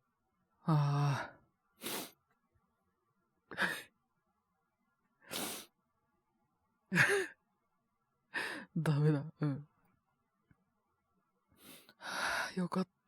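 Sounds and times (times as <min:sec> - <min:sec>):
breathy sniffs: 0:01.8 - 0:02.2, 0:05.3 - 0:05.7
man sobbing: 0:06.9 - 0:07.3.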